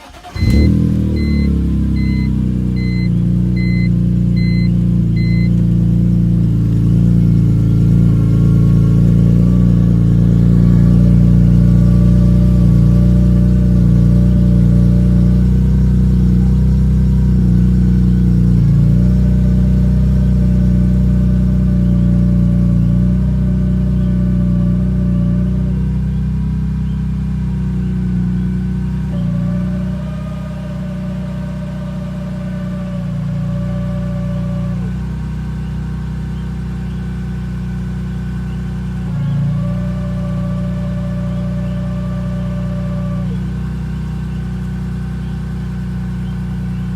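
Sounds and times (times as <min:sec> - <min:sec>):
car engine idling: 0:00.0 - 0:46.9
short electronic beeps: 0:00.2 - 0:05.7
thin whine: 0:38.4 - 0:44.6.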